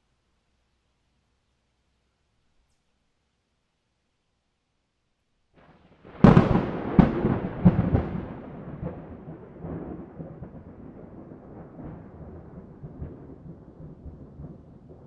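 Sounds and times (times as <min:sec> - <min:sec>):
low thunder rumble: 0:05.6 - 0:15.0
thunder cracks: 0:05.6 - 0:15.0.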